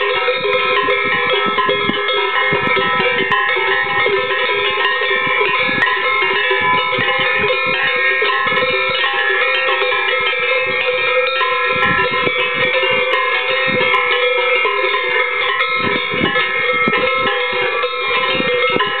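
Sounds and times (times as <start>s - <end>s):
cowbells ringing: 0.0s - 19.0s.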